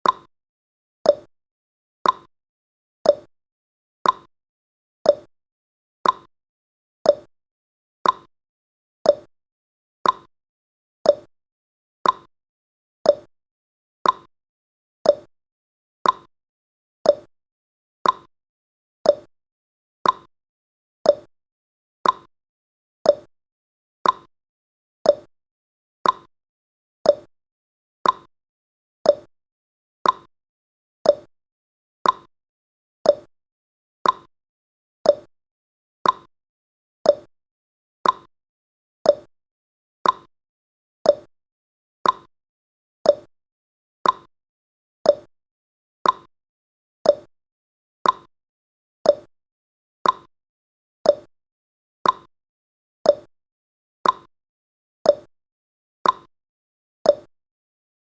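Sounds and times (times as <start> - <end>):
clock ticking: 18.0 - 18.3, 34.0 - 34.3, 38.0 - 38.3, 42.0 - 42.3, 50.0 - 50.3.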